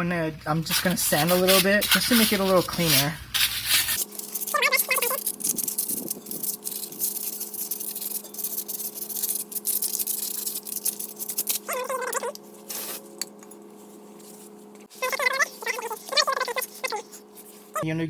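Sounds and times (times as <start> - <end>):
sanding metal by hand: 0.7 - 12.0
short high squeaks: 3.6 - 13.0, 14.8 - 17.8.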